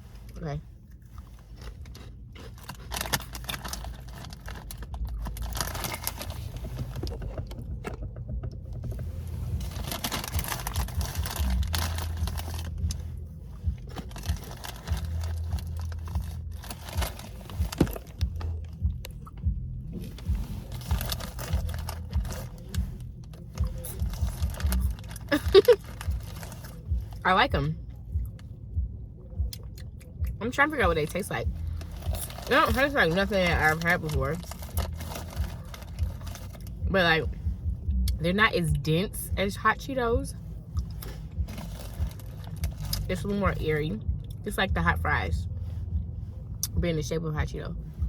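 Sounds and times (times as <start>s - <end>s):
person chewing crunchy snacks: 1.5s - 6.5s.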